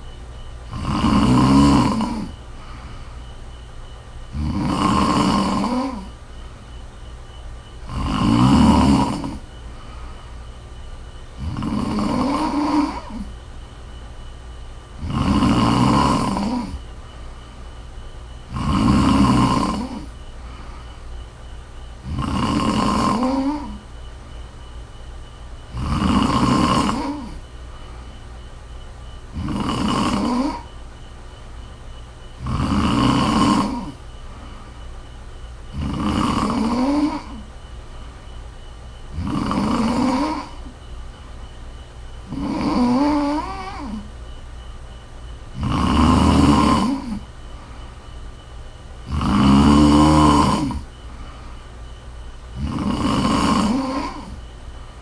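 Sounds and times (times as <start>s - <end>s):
woman snoring: 0.7s - 3.0s, 4.3s - 6.2s, 7.8s - 9.5s, 11.4s - 13.4s, 15.0s - 16.9s, 18.4s - 21.1s, 22.0s - 23.9s, 25.6s - 27.5s, 29.3s - 30.8s, 32.4s - 34.6s, 35.7s - 37.5s, 39.1s - 40.8s, 42.2s - 44.2s, 45.5s - 47.4s, 49.0s - 51.4s, 52.5s - 54.6s.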